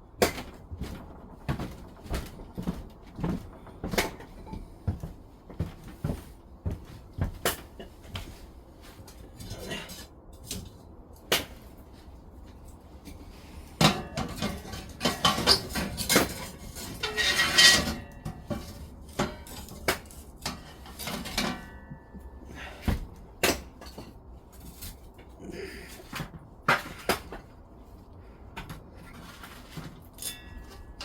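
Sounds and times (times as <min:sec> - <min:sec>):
objects knocking and clattering: 0:00.2 - 0:08.4, 0:13.7 - 0:25.2.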